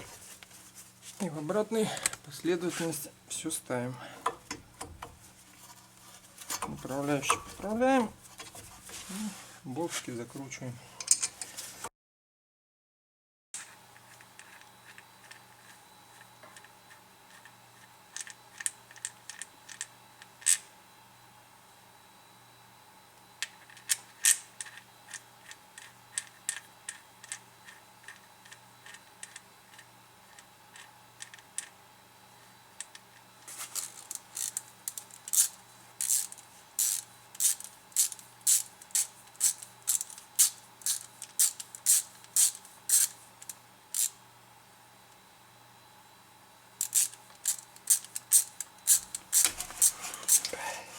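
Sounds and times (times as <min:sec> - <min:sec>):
ratchet wrench clicking: 0:34.1 - 0:44.1, 0:46.8 - 0:50.4.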